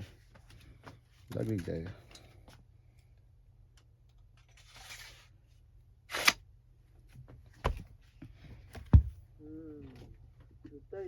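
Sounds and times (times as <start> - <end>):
dull thump: 8.7 - 9.2.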